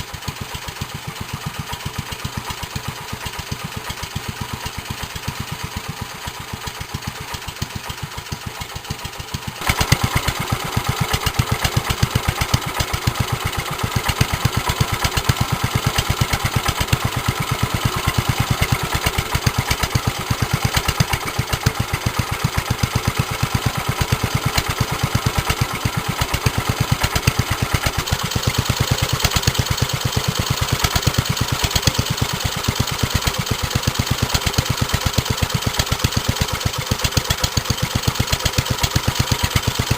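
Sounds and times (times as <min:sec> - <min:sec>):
stationary engine running: 0:00.0 - 0:39.9.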